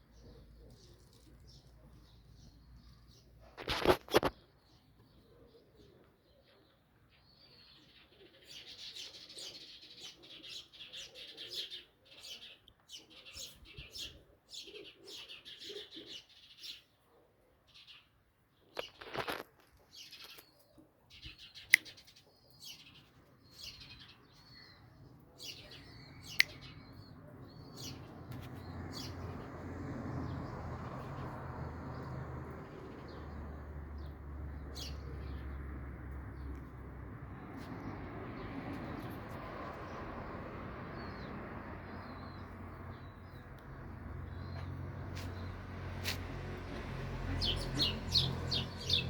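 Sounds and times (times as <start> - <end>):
birds chirping: 18.8 - 36.8, 41.0 - 49.0.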